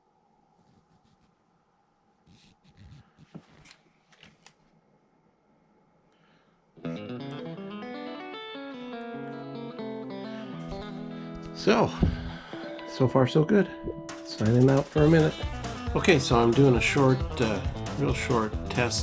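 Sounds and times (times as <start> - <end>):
distorted electric guitar music: 6.8 - 12.9, 15.1 - 19.0.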